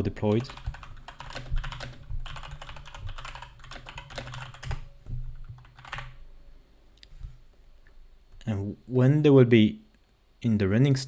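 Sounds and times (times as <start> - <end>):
keyboard typing: 0.3 - 6.2.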